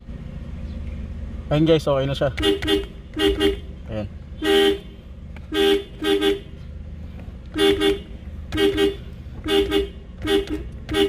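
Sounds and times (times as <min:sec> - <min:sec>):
car horn toots: 0:02.3 - 0:03.7, 0:04.4 - 0:06.6, 0:07.5 - 0:11.0.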